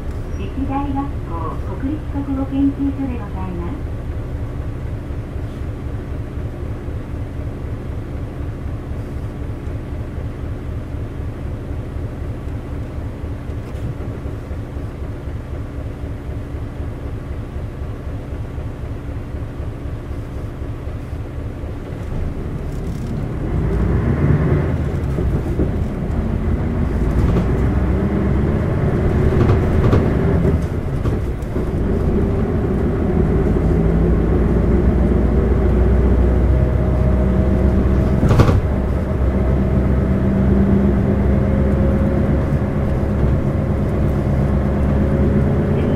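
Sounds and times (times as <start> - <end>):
bus diesel engine: 0.0 - 45.9.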